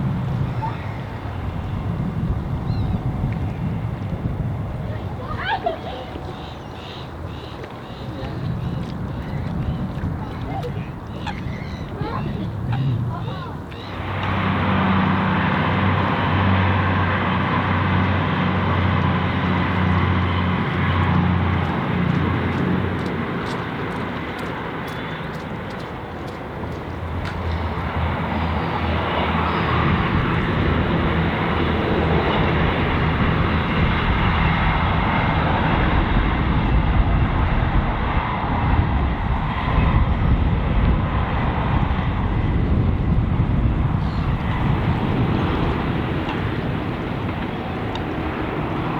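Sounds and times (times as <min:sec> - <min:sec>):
diesel train engine hum: 0:00.0 - 0:48.9
track and air noise: 0:00.0 - 0:48.9.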